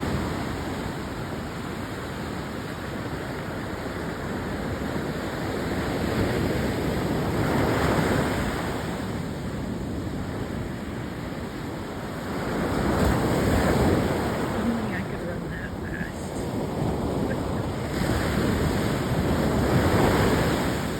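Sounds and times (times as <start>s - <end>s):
ocean surf washing onto beach: 0.0s - 20.9s
wind buffeting microphone: 4.4s - 20.9s.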